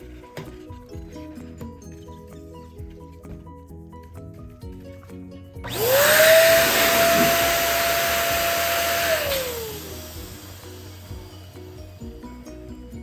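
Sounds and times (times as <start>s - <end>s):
electric air pump whine: 5.7s - 11.8s.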